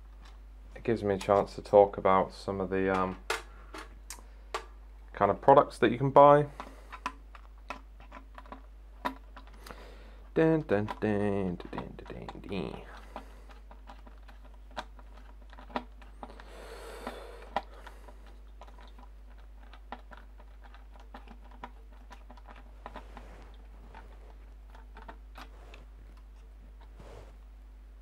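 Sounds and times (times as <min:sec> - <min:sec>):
soft rustle: 0:22.2 - 0:27.5.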